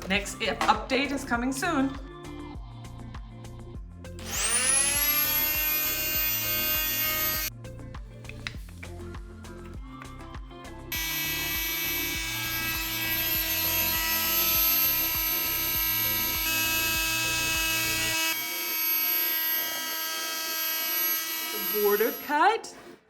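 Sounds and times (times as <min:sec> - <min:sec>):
background music with a beat: 0:00.0 - 0:17.7
power tool high whine: 0:04.2 - 0:07.5, 0:10.9 - 0:22.5.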